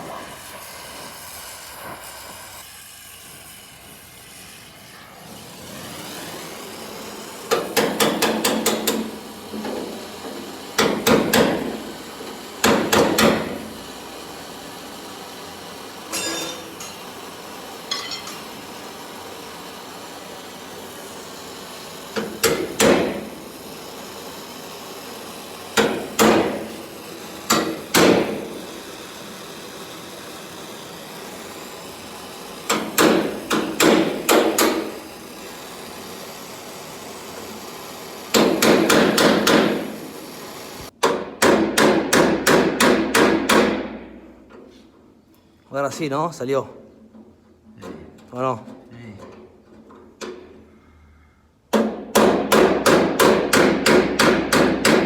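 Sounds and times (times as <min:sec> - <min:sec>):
steady hiss: 0:00.0 - 0:40.9
hammer beating steel panel: 0:07.5 - 0:09.1, 0:10.8 - 0:11.8, 0:12.6 - 0:13.6, 0:22.2 - 0:23.2, 0:25.8 - 0:26.7, 0:27.5 - 0:28.5, 0:32.7 - 0:35.0, 0:38.3 - 0:39.9, 0:41.0 - 0:44.0, 0:51.7 - 0:55.0.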